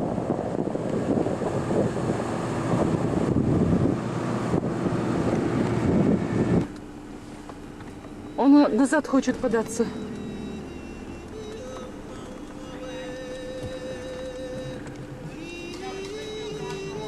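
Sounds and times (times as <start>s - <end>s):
wind buffeting microphone: 0.0s - 6.8s
car engine driving hard: 0.0s - 17.0s.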